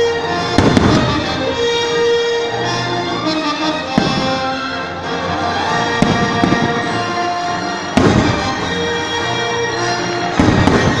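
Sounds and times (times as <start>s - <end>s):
orchestral music over loudspeakers: 0.0s - 11.0s
fireworks bursting: 0.4s - 1.9s, 3.9s - 4.8s, 5.9s - 9.2s, 10.3s - 11.0s.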